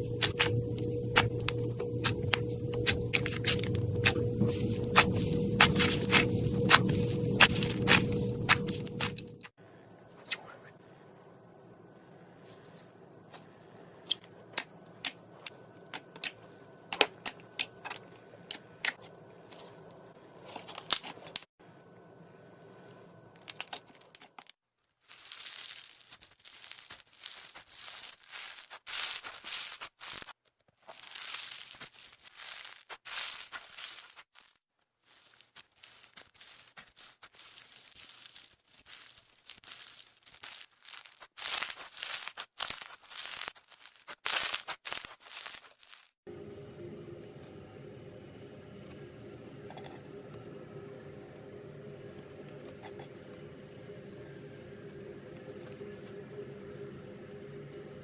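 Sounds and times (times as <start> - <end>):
slime crinkly crackling: 0.2 - 9.5, 23.4 - 46.2.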